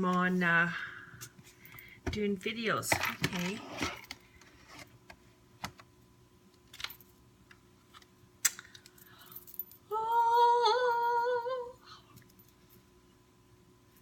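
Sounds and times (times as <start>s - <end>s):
woman humming: 9.9s - 12.0s.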